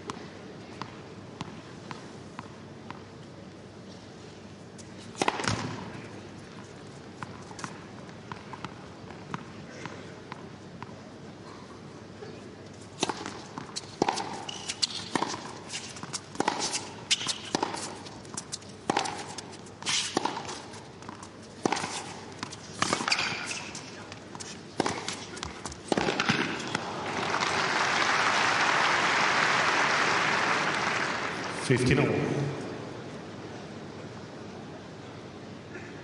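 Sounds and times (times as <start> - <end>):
tennis ball hit with rackets: 16.4 - 17.9, 18.9 - 19.5, 20.1 - 23.8, 24.8 - 27.5
crowd applause: 26.8 - 31.7.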